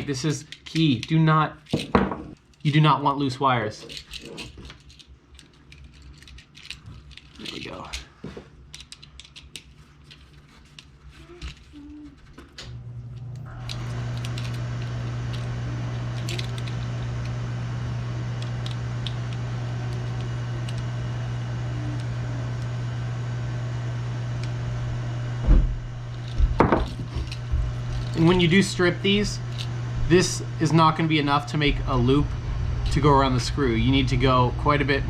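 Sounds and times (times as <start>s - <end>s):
machine hum with hiss: 12.6s - 35.0s.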